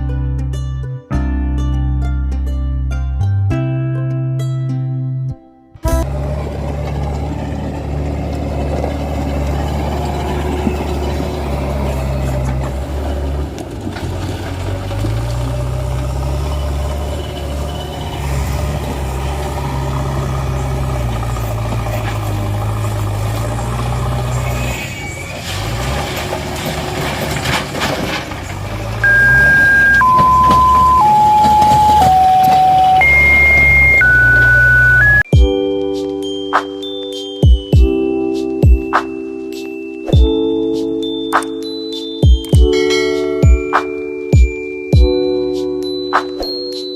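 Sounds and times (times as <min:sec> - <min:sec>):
descending electronic tones: 0:29.0 - 0:35.4.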